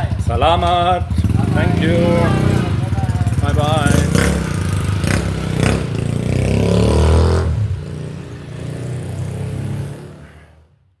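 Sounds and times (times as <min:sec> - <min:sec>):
vehicle engine revving: 0:00.0 - 0:10.7.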